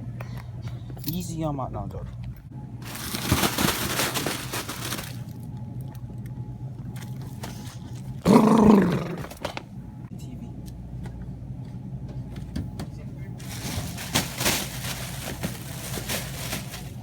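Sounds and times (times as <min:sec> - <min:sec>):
plastic packaging crinkling: 0:02.8 - 0:05.6, 0:13.4 - 0:17.0.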